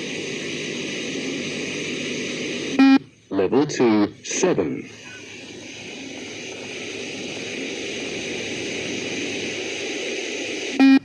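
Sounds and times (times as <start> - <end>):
steady rushing noise: 4.3 - 10.8.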